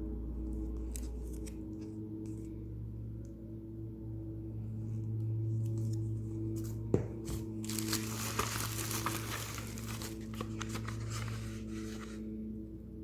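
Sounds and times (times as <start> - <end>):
soft background music: 0.0 - 13.0
packaging crinkling and tearing: 7.6 - 12.0.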